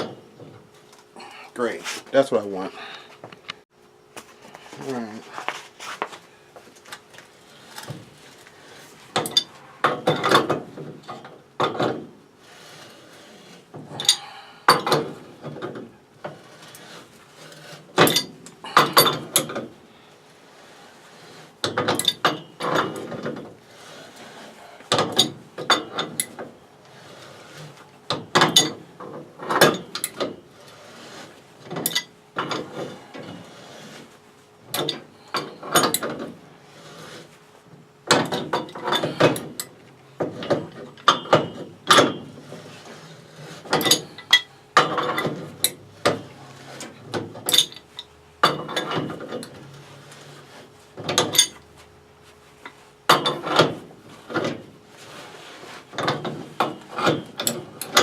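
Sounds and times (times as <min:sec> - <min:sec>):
wrench clicking and scraping on pipe: 0:38.1 - 0:50.4.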